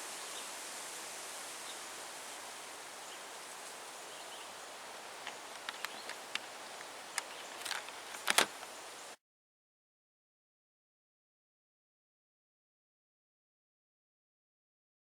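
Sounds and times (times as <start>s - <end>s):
steady hiss: 0.0s - 9.2s
handling clicks and taps: 5.2s - 8.7s.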